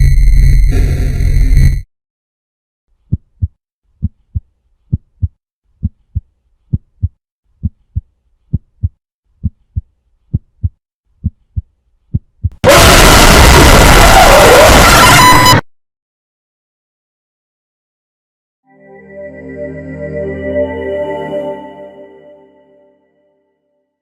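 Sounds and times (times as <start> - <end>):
loud electronic tone: 0.0 - 1.8, 12.7 - 15.6
heartbeat double thumps: 3.1 - 12.6.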